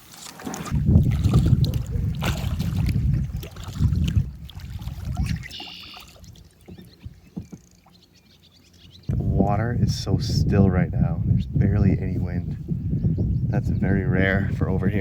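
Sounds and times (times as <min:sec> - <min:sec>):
water splashing: 0:00.0 - 0:08.0
paddle strokes: 0:00.0 - 0:08.1
low rumbling on microphone: 0:00.7 - 0:05.5, 0:09.0 - 0:15.0
water drips: 0:01.0 - 0:08.0
bird call: 0:05.2 - 0:09.1.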